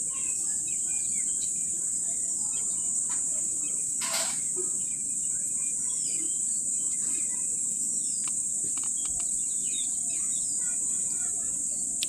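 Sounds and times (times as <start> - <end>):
insects droning: 0.0 - 12.0
faint bird chirps: 4.7 - 12.0.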